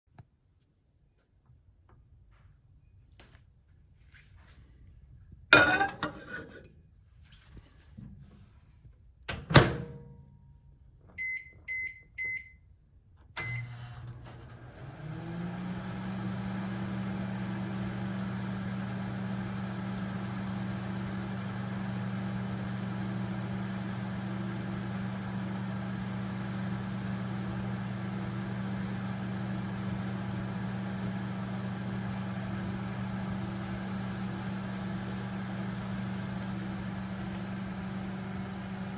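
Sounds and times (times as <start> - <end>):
microwave oven humming: 5.6 - 6.6, 11.2 - 12.5, 13.3 - 38.9
microwave door click shut: 9.3 - 10.1.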